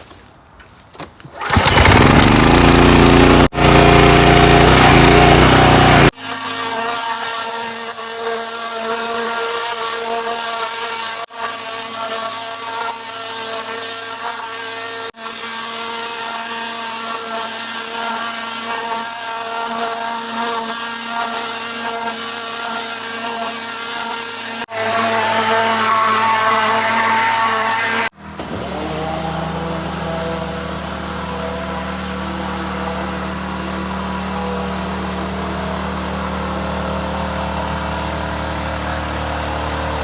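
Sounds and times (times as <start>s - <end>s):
small engine running: 1.3s - 7.2s, 15.6s - 40.0s
high-pressure water spray hissing: 26.8s - 40.0s.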